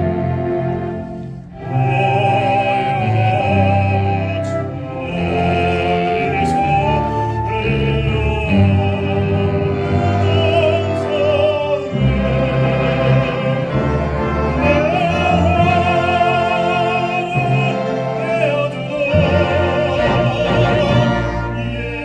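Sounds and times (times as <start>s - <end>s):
orchestra: 0.0s - 22.0s
baritone operatic singing: 1.5s - 22.0s.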